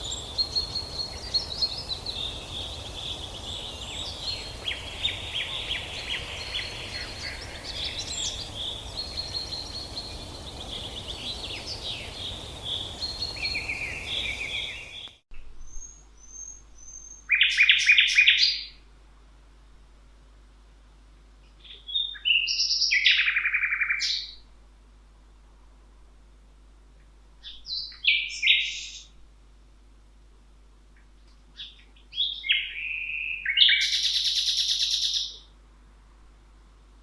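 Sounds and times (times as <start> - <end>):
songbirds singing and chirping: 0.0 - 18.8, 31.6 - 35.5
steady background hiss: 0.0 - 37.0.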